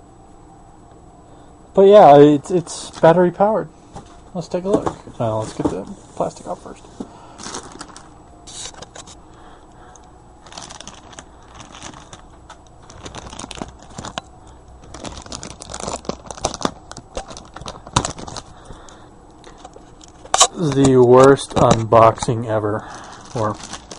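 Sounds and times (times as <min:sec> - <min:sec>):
plastic wrap crinkling: 0:07.4 - 0:09.2, 0:10.4 - 0:23.9.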